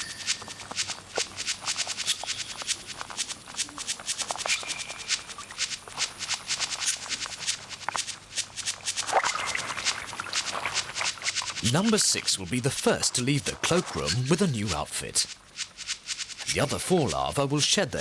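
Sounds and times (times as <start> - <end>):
high whistling tones: 0.0 - 1.0, 4.4 - 5.8
irregular clicking and crackling: 0.0 - 17.8.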